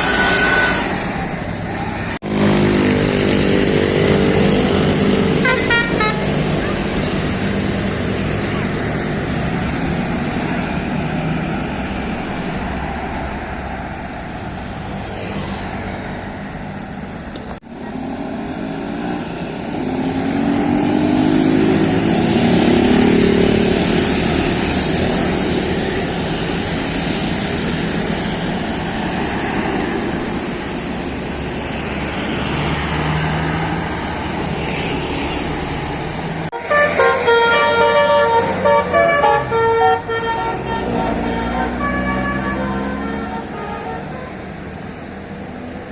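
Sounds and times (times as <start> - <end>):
bus musical horn tune: 0.0 - 1.1, 4.6 - 6.6, 36.5 - 44.6
heavy bus traffic: 0.0 - 45.9.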